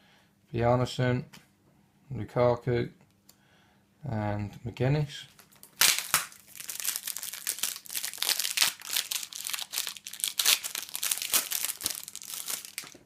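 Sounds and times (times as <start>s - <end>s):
foil packet tearing and crinkling: 5.4s - 13.0s.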